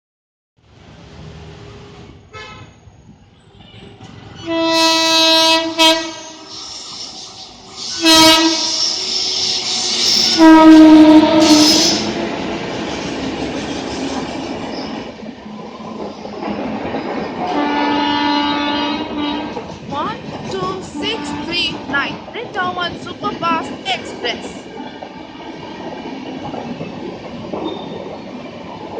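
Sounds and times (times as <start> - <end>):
train coaches rumbling and clattering: 0.6 - 28.9
train horn blasts: 2.3 - 2.7, 4.4 - 6.6, 7.9 - 12.1, 17.4 - 19.6, 20.9 - 22.1.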